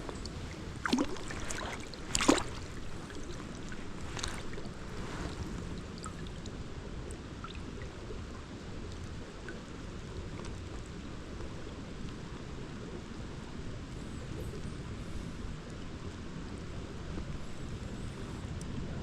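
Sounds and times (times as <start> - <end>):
water splashes: 0.0 - 6.7
creek water flowing: 0.0 - 8.1.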